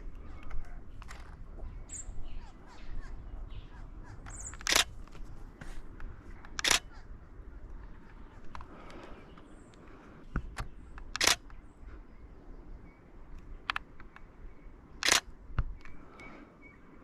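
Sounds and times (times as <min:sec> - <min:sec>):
camera shutter clicks: 0:04.3 - 0:05.0, 0:06.5 - 0:07.0, 0:11.0 - 0:11.6, 0:15.0 - 0:15.3
rapid camera shutter bursts: 0:04.6 - 0:05.0, 0:06.6 - 0:07.0, 0:11.1 - 0:11.5, 0:15.0 - 0:15.3.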